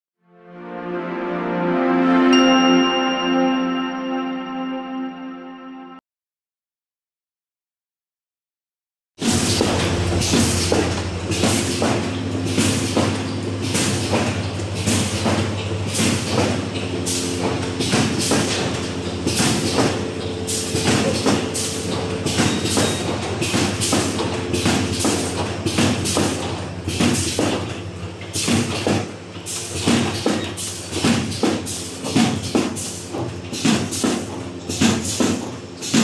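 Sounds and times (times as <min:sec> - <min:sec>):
motor hum: 0:09.2 - 0:28.4
machine knocking and clattering: 0:09.2 - 0:36.0.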